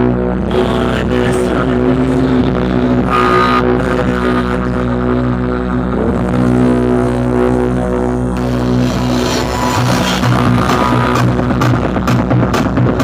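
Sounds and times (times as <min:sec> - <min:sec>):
loud droning music: 0:00.0 - 0:13.0.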